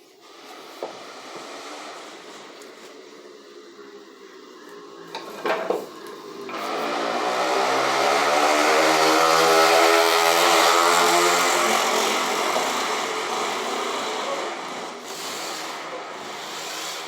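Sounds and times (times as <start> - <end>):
vehicle engine passing by: 6.6 - 15.0.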